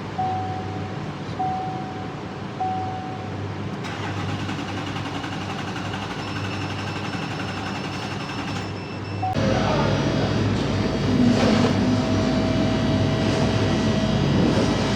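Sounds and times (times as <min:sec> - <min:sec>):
diesel engine cranking with whine: 0:03.8 - 0:14.9.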